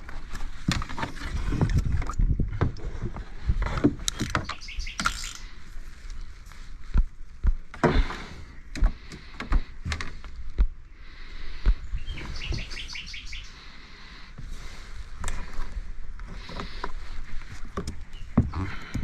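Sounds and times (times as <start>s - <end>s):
songbird chirping: 4.1s - 7.4s, 10.8s - 14.3s, 17.6s - 19.0s.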